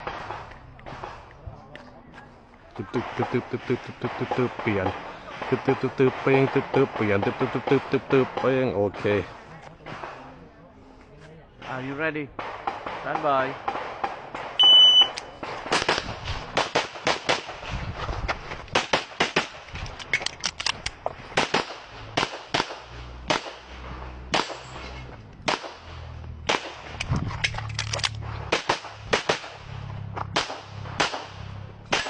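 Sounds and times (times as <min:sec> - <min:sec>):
shot timer beep: 0:14.6 - 0:15.3
handgun shots: 0:30.3 - 0:32.0.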